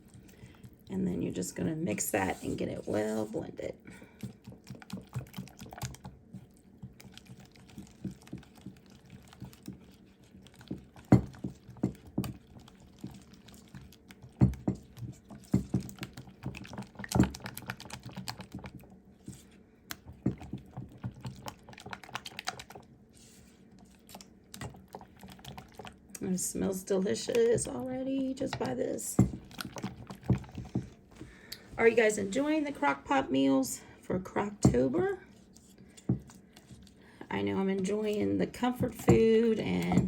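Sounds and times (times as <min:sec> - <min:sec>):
utensil stirring thick mixture: 0:00.0 - 0:40.0.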